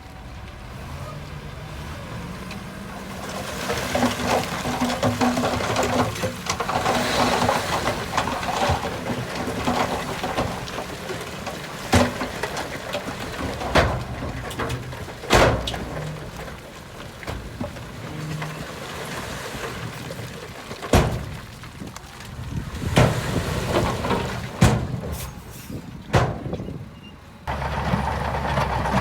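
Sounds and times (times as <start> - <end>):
bulldozer engine running: 0.0 - 29.0
sharp knocks and clatters: 3.6 - 18.6, 19.9 - 21.8.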